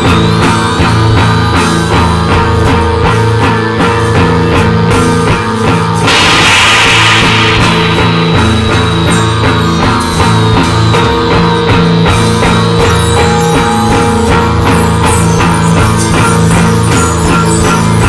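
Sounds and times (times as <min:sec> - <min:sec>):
loud rock music: 0:00.0 - 0:18.0
noisy hiss: 0:06.1 - 0:09.5.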